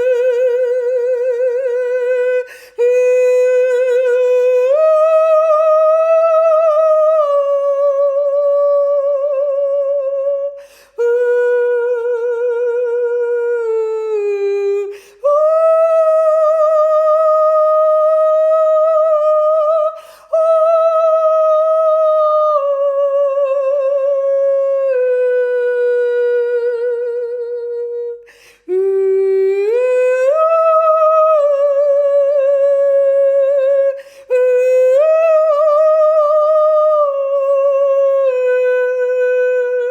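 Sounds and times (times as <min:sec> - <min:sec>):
person singing wordlessly: 0:00.0 - 0:39.9
quick breaths: 0:02.5 - 0:02.8, 0:28.3 - 0:28.7, 0:34.0 - 0:34.3.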